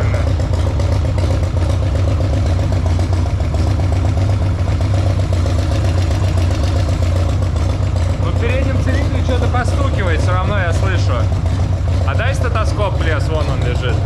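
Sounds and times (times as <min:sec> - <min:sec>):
motorcycle engine idling: 0:00.0 - 0:14.0.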